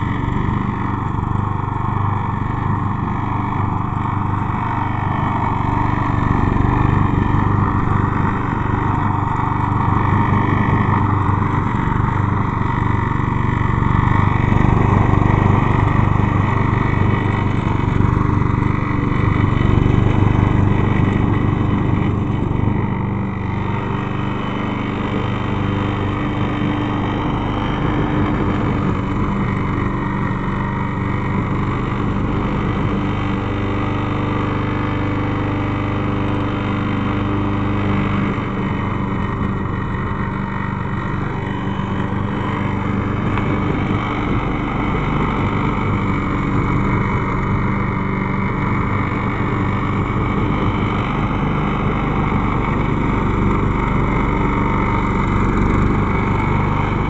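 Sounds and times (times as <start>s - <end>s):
lawn mower engine running: 0.0s - 57.0s.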